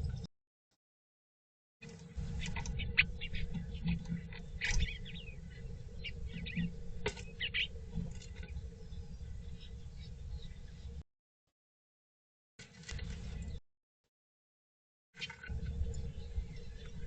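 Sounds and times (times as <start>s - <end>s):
small birds chirping: 2.0s - 11.0s, 12.9s - 13.6s, 15.2s - 17.0s
steady low hum: 2.0s - 11.0s, 15.5s - 17.0s.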